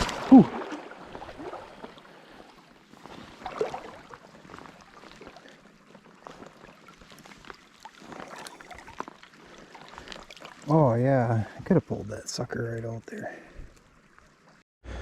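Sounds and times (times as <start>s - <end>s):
small splashes: 0.0s - 11.6s
stream water running: 0.0s - 14.6s.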